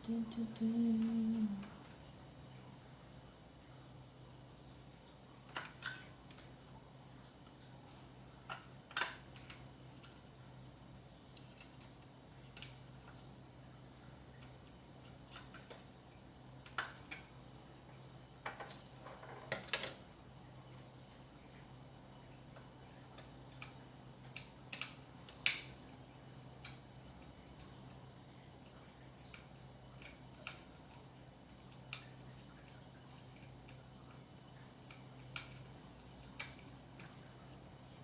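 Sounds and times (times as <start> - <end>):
faint hum: 0.0 - 38.0
small clicks and taps: 7.4 - 10.2, 22.5 - 25.8, 28.6 - 34.2, 34.8 - 37.7.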